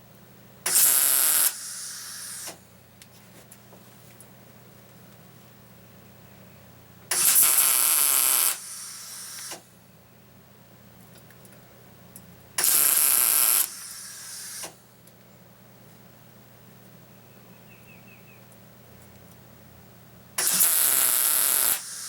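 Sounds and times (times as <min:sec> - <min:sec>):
arc welding hiss: 0:00.7 - 0:02.6, 0:07.1 - 0:09.7, 0:12.6 - 0:14.8, 0:20.4 - 0:22.0.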